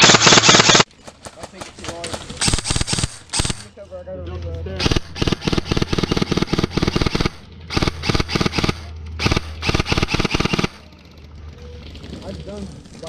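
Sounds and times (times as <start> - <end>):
airsoft rifle rapid fire: 0.0 - 3.7, 4.8 - 10.8.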